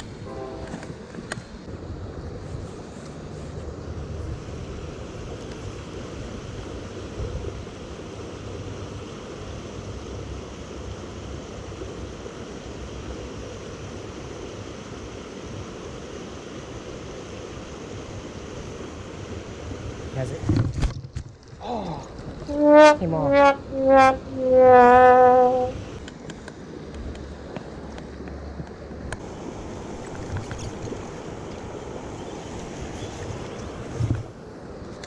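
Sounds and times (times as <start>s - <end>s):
wind buffeting microphone: 0.0s - 8.6s, 26.7s - 35.0s
creek water rushing: 0.0s - 20.5s, 21.8s - 35.0s.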